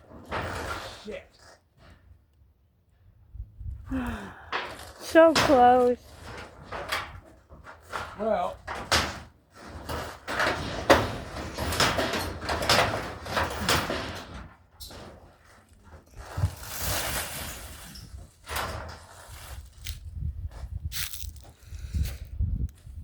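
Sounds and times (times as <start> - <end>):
wooden boards knocking and creaking: 0.0 - 1.0, 4.5 - 16.6.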